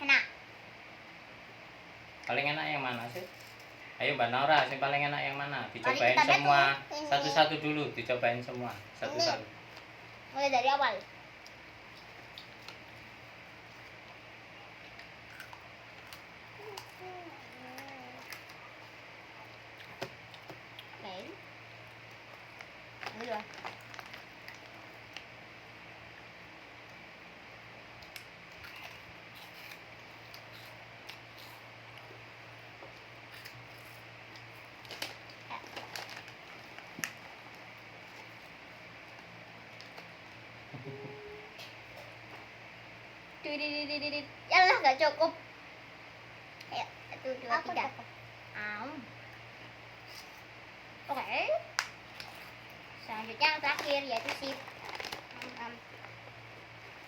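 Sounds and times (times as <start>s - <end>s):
low room hum: 0.0s - 57.0s
crunchy snacks being chewed: 14.8s - 21.0s, 22.2s - 25.2s, 28.0s - 32.1s, 33.0s - 38.6s, 51.8s - 56.2s
crunchy snacks being eaten: 15.0s - 18.6s, 28.5s - 31.7s, 52.1s - 53.1s
snack packaging rustling: 21.9s - 25.4s, 33.0s - 40.2s, 51.8s - 57.0s.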